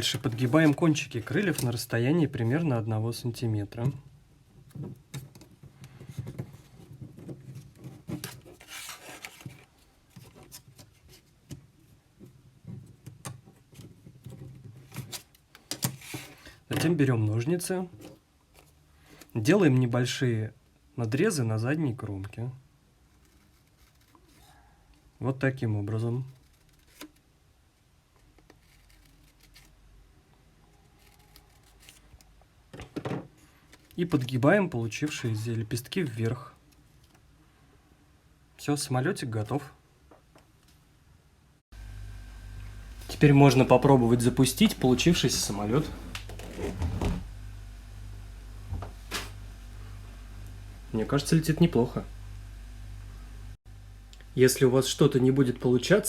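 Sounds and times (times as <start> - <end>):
paper crease scraping: 0.2 - 1.8, 7.4 - 11.3, 23.1 - 24.5, 26.2 - 27.2, 28.5 - 29.8, 30.8 - 32.2, 43.0 - 47.3
paper rustling and crinkling: 6.0 - 11.4, 28.3 - 29.8, 30.9 - 32.2, 48.7 - 49.4
paper rustling and clicking: 26.3 - 27.2, 31.0 - 32.3, 49.1 - 49.4.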